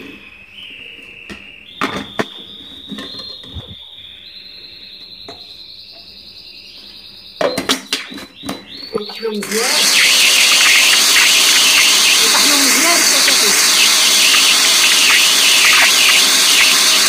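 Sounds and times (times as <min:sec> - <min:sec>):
faint high whine: 0:09.0 - 0:17.0.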